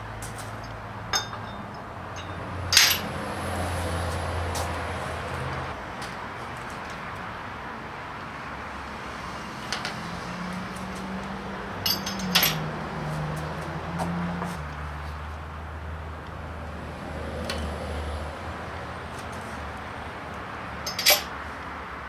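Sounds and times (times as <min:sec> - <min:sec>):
handling noise: 0:00.2 - 0:03.2, 0:11.8 - 0:12.7, 0:20.8 - 0:21.4
metal engine parts clinking: 0:00.3 - 0:03.2, 0:11.8 - 0:12.7, 0:20.8 - 0:21.4.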